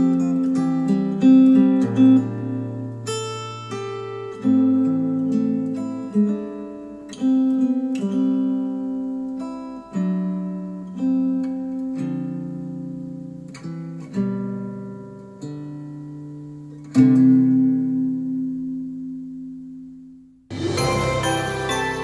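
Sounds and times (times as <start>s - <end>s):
strummed acoustic guitar chords: 20.5s - 22.0s.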